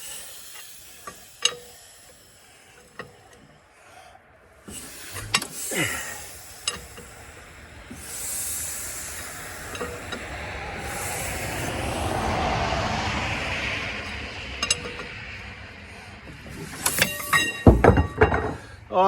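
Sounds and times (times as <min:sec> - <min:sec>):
hiss of air: 0:00.0 - 0:03.3, 0:04.6 - 0:14.1.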